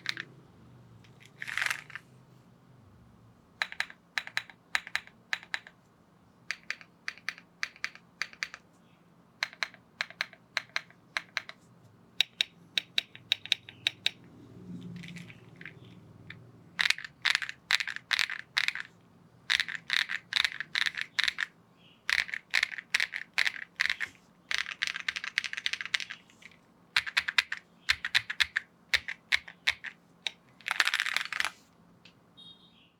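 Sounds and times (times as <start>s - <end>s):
mechanical keyboard keystrokes: 0.0s - 0.3s, 3.6s - 5.8s, 6.5s - 8.6s, 9.4s - 11.6s, 12.2s - 14.2s, 14.8s - 18.9s, 19.5s - 21.5s, 22.1s - 31.6s.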